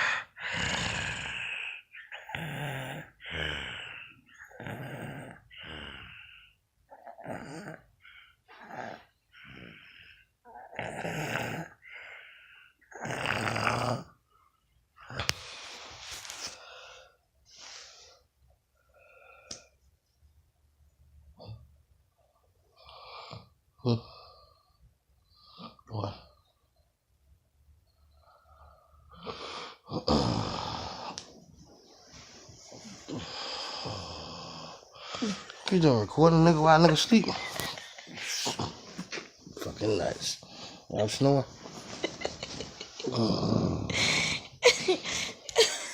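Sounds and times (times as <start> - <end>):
noisy breathing: 0.0 - 6.7, 28.2 - 45.9
person snoring: 0.0 - 12.2, 12.9 - 14.2, 29.1 - 31.3, 32.1 - 45.9.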